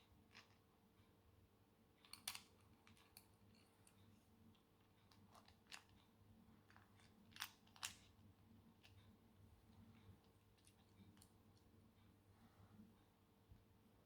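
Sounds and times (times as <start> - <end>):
small parts clicking and knocking: 2.0 - 4.0, 6.6 - 8.2.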